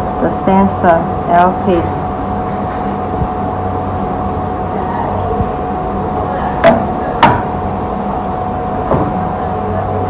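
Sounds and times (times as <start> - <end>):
steady hum: 0.0 - 10.0
sharp knocks: 6.6 - 7.5.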